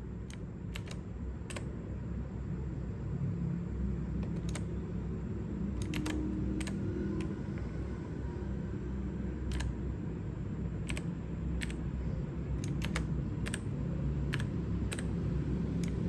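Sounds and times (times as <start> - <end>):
steady low hum: 0.0 - 16.0
mechanical keyboard key clicks: 0.3 - 1.8, 4.2 - 4.7, 5.7 - 7.7, 9.4 - 9.8, 10.8 - 11.9, 12.6 - 16.0.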